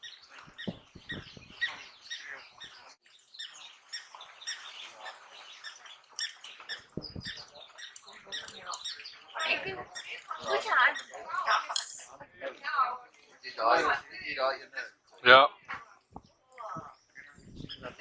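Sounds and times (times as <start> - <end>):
wild dogs twittering: 0.0 - 11.7.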